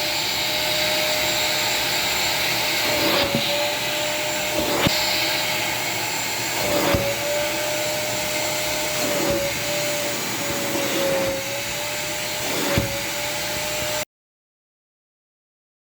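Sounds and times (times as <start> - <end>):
vacuum cleaner motor whine: 0.0 - 14.0.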